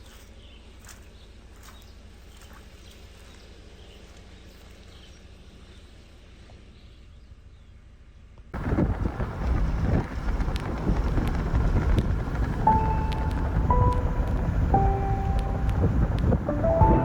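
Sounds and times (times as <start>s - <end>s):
low rumble: 8.6s - 17.0s.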